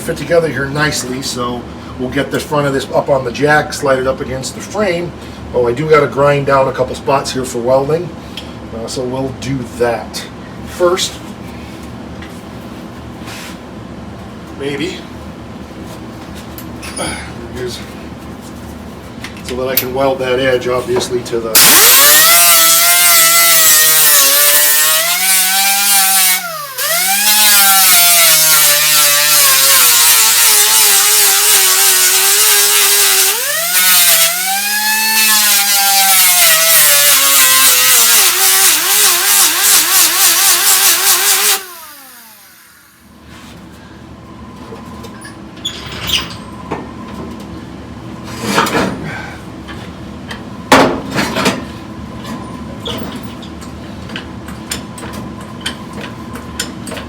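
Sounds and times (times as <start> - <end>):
electric grinder grinding steel: 21.6 - 43.0.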